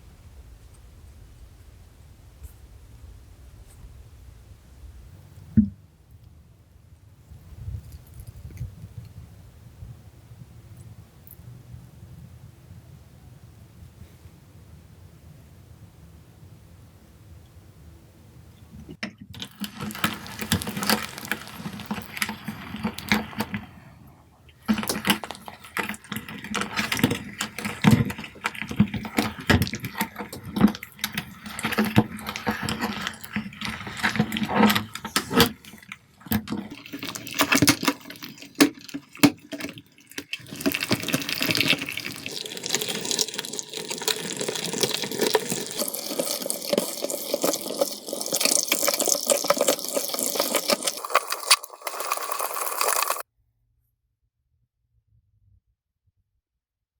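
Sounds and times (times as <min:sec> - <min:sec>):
wet slime squelching and crackling: 0:19.4 - 0:53.3.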